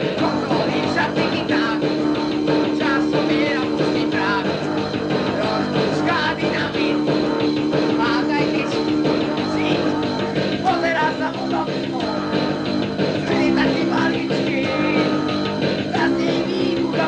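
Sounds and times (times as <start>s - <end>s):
punk rock band playing: 0.0s - 17.0s.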